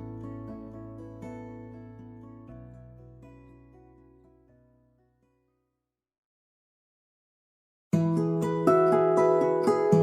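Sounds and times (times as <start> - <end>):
plucked string music: 0.0 - 4.4, 8.0 - 10.0.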